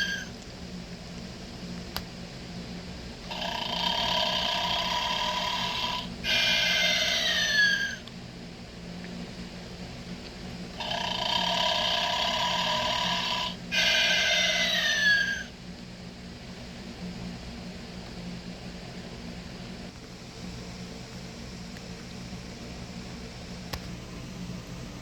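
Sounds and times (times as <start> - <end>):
toy snoring sound: 0.0 - 0.3, 3.3 - 8.0, 10.8 - 15.5
steady low hum: 0.0 - 25.0
click: 1.8 - 2.1, 23.7 - 24.0.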